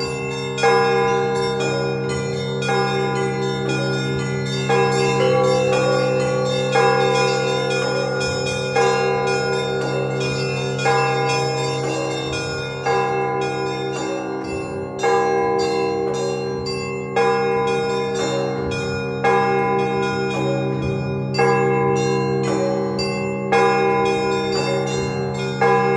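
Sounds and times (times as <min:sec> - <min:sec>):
large bell striking: 0:00.0 - 0:25.9
small bells chiming rapidly: 0:00.0 - 0:25.9.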